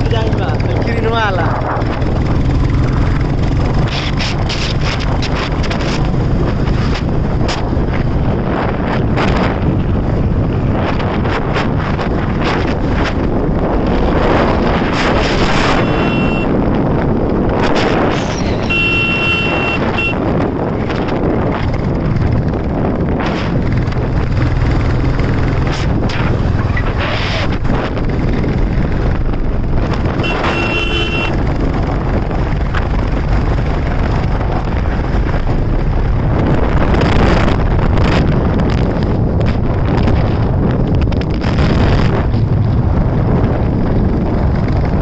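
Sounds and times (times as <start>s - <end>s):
motorcycle engine running: 0.0s - 45.0s
wind rushing over microphone: 0.0s - 45.0s
vehicle horn beeps: 15.7s - 16.6s, 18.6s - 20.3s, 30.2s - 31.4s.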